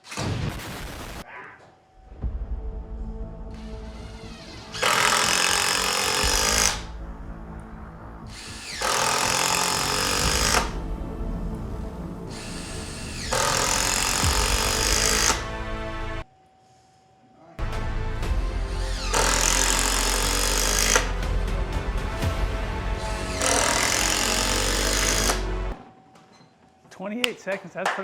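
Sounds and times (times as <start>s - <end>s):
background music: 0.3s - 16.3s, 17.6s - 26.0s
cordless drill driving screws: 4.3s - 6.9s, 8.3s - 10.8s, 13.1s - 15.5s, 18.8s - 21.1s, 23.1s - 25.5s.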